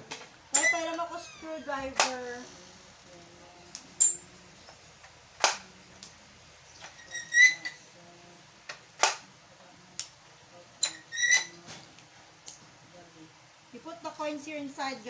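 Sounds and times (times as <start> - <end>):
high-pitched toy squeals: 7.0 - 7.8.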